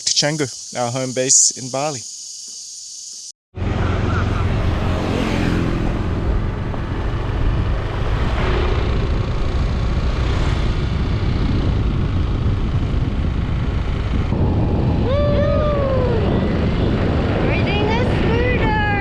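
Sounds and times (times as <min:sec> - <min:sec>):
short pitched tone: 0:03.6 - 0:04.8
scooter engine and road rumble: 0:03.6 - 0:19.0
wind rush: 0:03.6 - 0:19.0.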